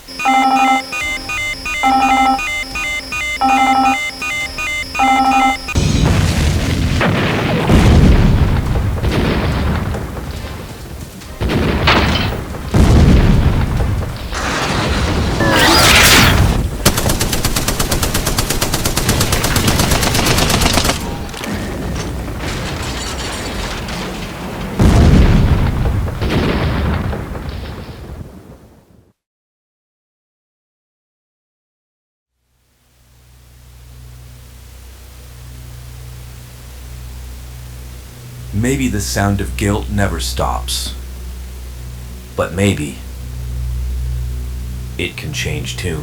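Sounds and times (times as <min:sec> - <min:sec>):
short electronic beeps: 0:00.0 - 0:05.8, 0:15.4 - 0:16.3
heavy booms and explosions: 0:05.6 - 0:29.1
rapid-fire blaster shots: 0:11.4 - 0:21.4
music: 0:32.6 - 0:46.0.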